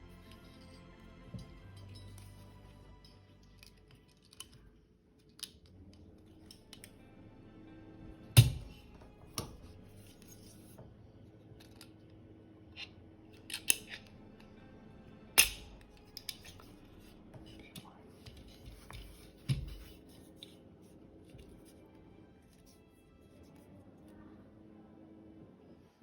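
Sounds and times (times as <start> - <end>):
metallic clicks and snaps: 3.4 - 5.7, 12.8 - 14.1, 15.4 - 16.6.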